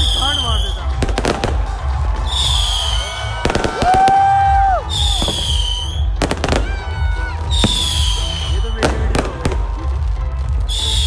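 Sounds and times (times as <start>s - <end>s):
fireworks banging: 0.0s - 11.0s
music playing: 0.0s - 11.0s.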